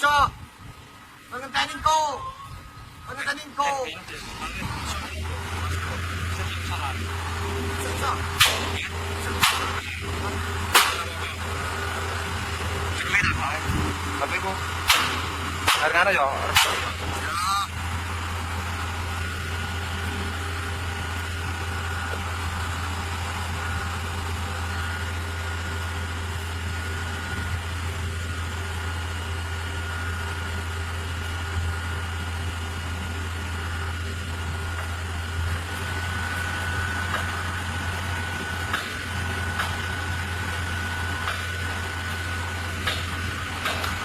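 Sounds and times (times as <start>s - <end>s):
high-pitched whine: 0.0s - 44.0s
truck engine idling: 0.0s - 44.0s.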